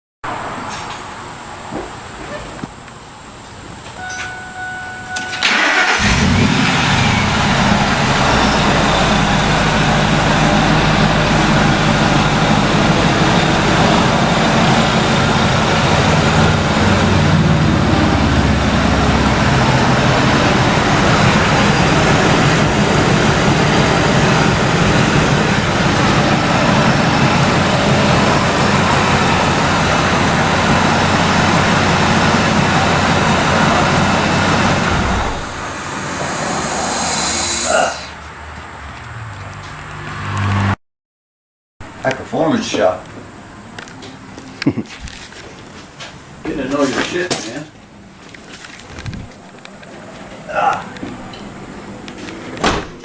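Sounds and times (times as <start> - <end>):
truck engine running: 4.0 - 37.7.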